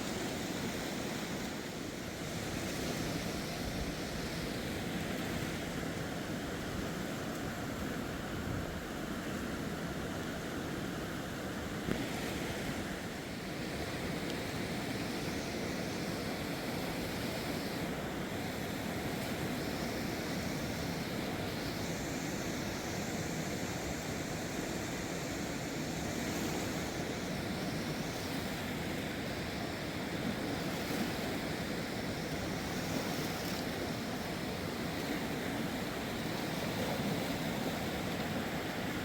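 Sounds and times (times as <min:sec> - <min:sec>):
river rushing: 0:00.0 - 0:39.0.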